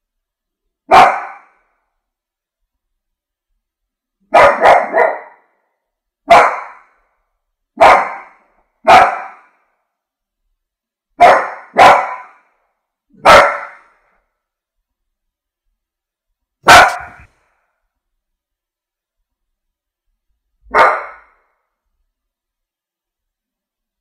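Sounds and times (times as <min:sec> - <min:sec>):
dog barking: 0:00.9 - 0:01.6, 0:04.3 - 0:05.6, 0:06.2 - 0:07.0, 0:07.8 - 0:09.6, 0:11.2 - 0:12.5, 0:13.2 - 0:14.0, 0:16.6 - 0:17.3, 0:20.6 - 0:21.4.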